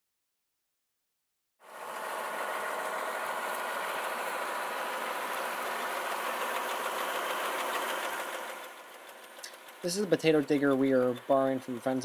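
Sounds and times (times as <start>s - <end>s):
tractor engine running: 1.6s - 12.0s.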